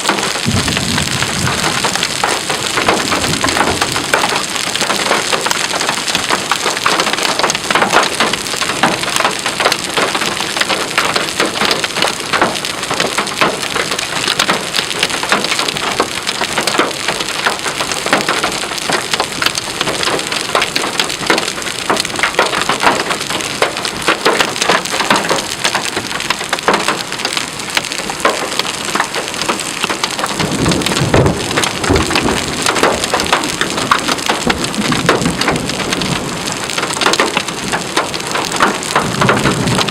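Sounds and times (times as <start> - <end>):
heavy rain pelting down: 0.0 - 39.9
low thunder rumble: 0.1 - 5.9, 30.3 - 39.9.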